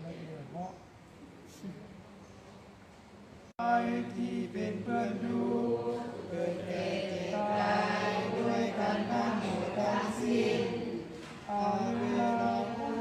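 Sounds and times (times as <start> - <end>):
voices chanting in unison: 3.6 - 13.0.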